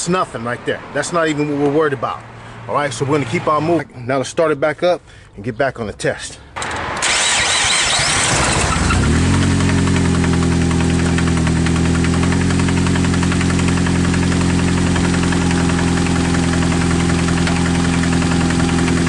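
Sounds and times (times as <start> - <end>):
car engine starting and idling: 6.6 - 19.0
rapid engine knocking: 9.0 - 19.0.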